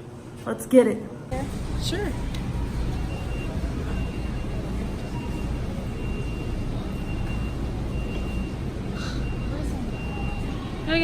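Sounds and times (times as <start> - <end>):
faint high beep: 2.1 - 10.7.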